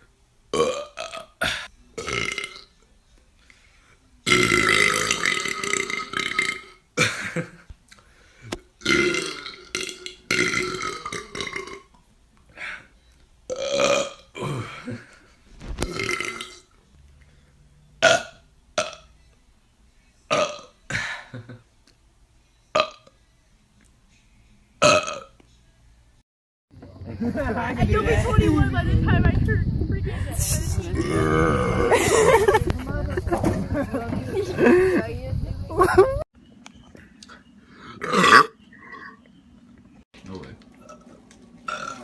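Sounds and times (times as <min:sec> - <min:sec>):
men belching: 0:04.3 - 0:06.7, 0:08.8 - 0:11.8, 0:13.5 - 0:15.0, 0:30.9 - 0:32.5, 0:38.0 - 0:39.2.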